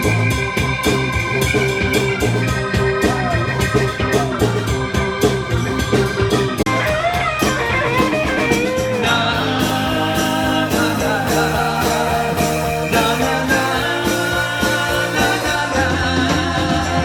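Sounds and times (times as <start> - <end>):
live rock band playing: 0.0 - 17.0
steady drum beat: 0.0 - 17.0.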